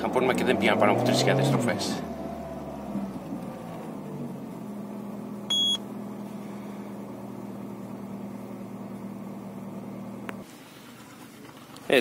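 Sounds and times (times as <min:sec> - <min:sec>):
car engine idling: 0:01.6 - 0:11.9
short beep: 0:05.5 - 0:05.8.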